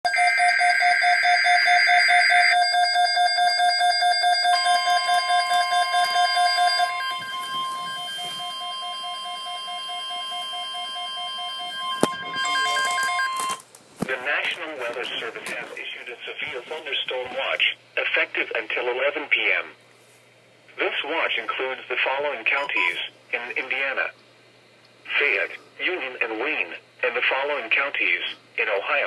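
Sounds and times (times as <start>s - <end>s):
rapidly pulsing alarm beep: 0.1s - 13.6s, 22.6s - 23.0s
steady warning tone: 0.1s - 13.6s.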